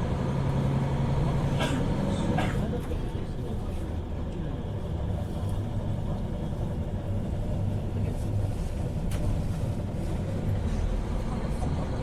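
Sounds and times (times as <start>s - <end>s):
diesel railcar rumbling: 0.0s - 12.0s.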